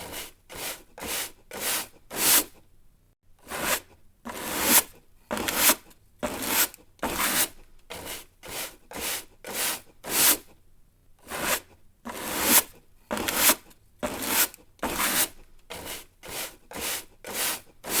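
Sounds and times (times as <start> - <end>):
straw broom sweeping: 13.4 - 18.0.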